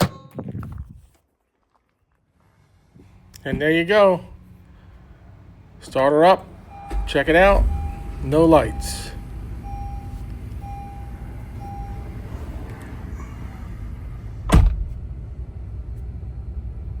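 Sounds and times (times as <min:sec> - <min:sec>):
car engine idling: 0:03.0 - 0:17.0
dashboard chime beeping: 0:06.6 - 0:12.4
loud thump: 0:06.7 - 0:09.2, 0:14.5 - 0:15.0.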